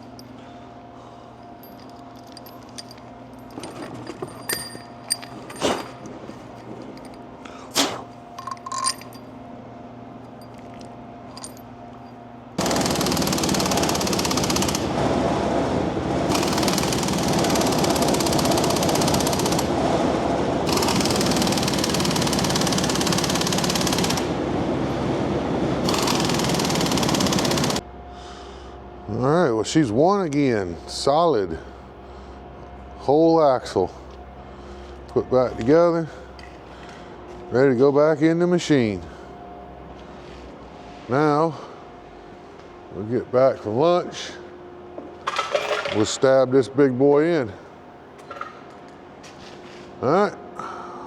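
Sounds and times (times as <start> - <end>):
steady hum: 0.0 - 45.4
light metal clinks: 1.5 - 6.0, 8.4 - 9.3.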